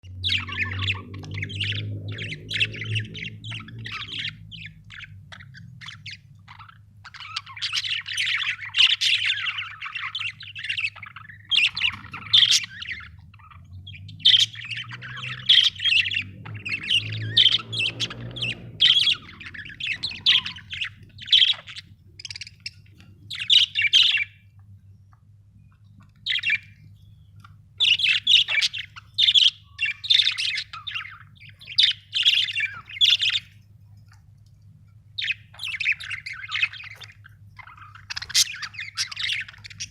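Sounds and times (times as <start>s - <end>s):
budgerigars chirping: 0.1s - 24.6s, 25.6s - 34.3s, 34.9s - 39.9s.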